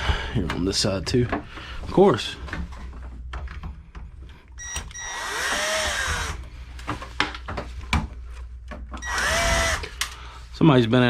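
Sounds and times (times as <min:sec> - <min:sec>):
cordless drill driving screw: 0:04.7 - 0:06.4, 0:09.0 - 0:10.0.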